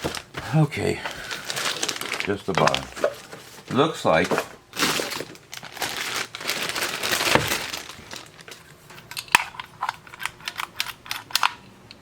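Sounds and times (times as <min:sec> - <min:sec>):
wrapping crinkling and rustling: 0:00.0 - 0:11.6.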